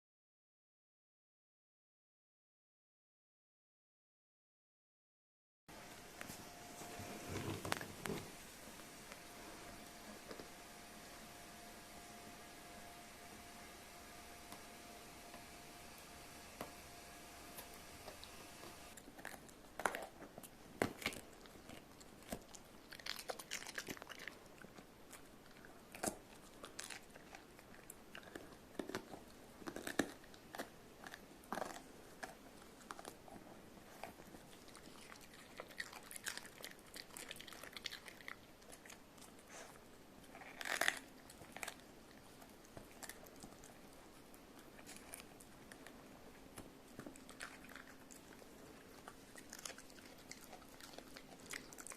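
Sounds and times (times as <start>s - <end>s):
dog chewing pepper crunches: 17.6s - 51.9s.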